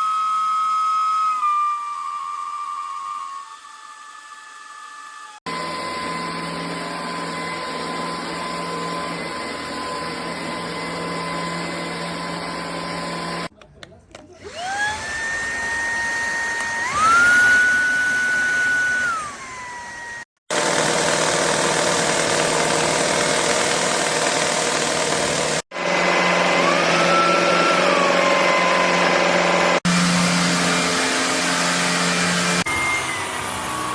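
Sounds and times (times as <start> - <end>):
stick vacuum motor whining: 14.1 - 33.9.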